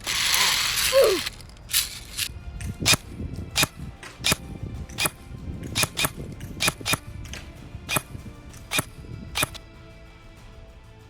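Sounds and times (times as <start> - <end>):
airsoft gun firing single shots: 2.8 - 9.6.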